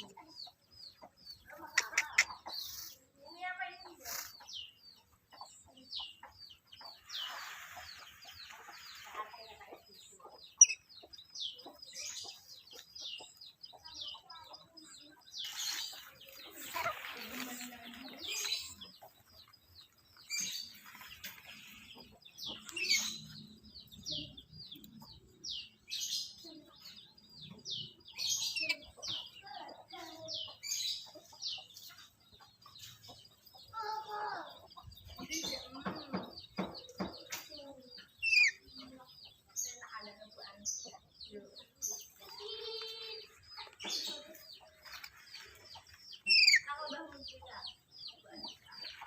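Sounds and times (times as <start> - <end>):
bird high-pitched chirps: 0.0 - 49.0
bird clicking chatter: 1.6 - 2.9.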